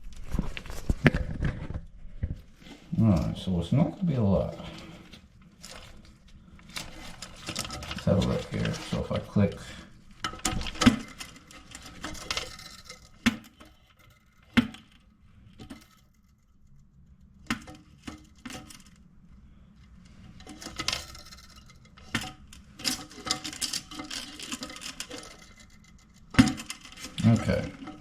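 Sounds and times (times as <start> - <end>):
toilet flapper chain clinking: 20.4 - 28.0.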